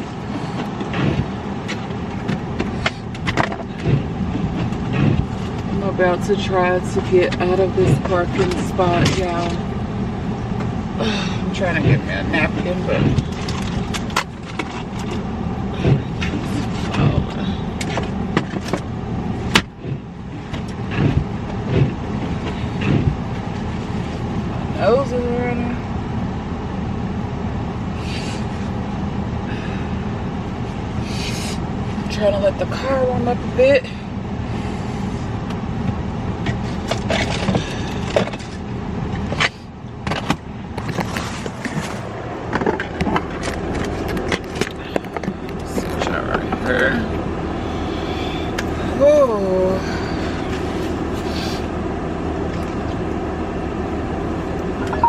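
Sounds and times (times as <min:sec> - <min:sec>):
car engine idling: 0:00.0 - 0:55.0
rustling and clicking of handled things: 0:36.4 - 0:46.7.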